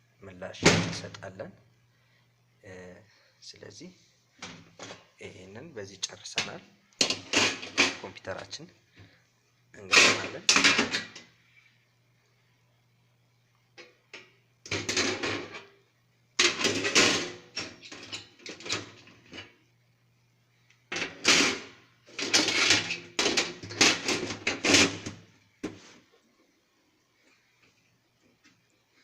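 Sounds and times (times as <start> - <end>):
faint low hum: 0.0 - 29.0
computer parts clattering: 20.9 - 25.1.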